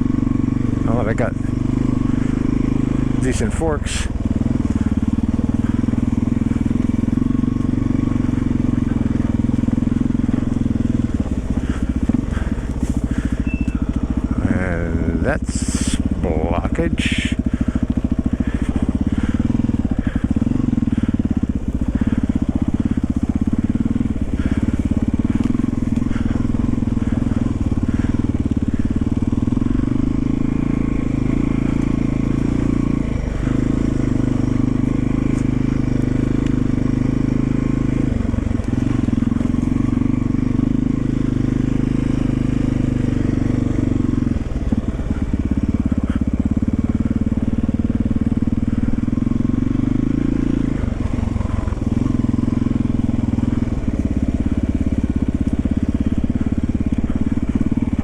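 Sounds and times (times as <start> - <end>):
motorcycle engine running: 0.0 - 58.0.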